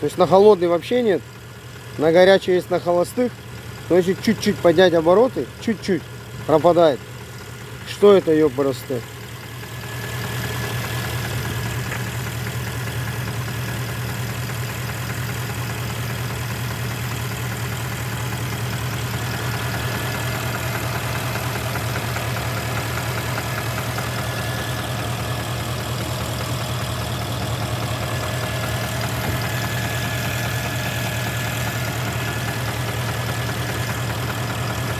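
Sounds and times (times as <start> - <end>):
car engine idling: 0.0 - 34.9
engine knock: 0.0 - 34.9.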